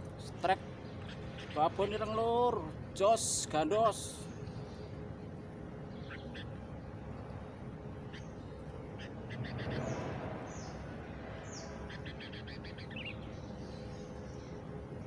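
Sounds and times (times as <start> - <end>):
faint outdoor hum: 0.0 - 15.0
birds chirping: 0.2 - 15.0
rushing noise: 9.2 - 11.9.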